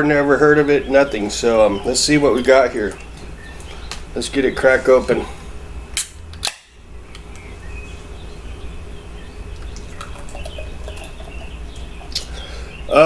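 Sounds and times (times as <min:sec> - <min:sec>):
beer fizzing into a glass: 0:09.6 - 0:11.6.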